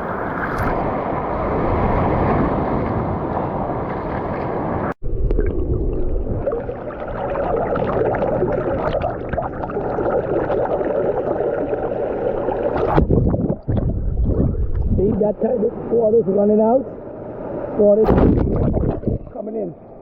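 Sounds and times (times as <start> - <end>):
ocean surf churning: 0.0 - 4.9, 13.9 - 20.0.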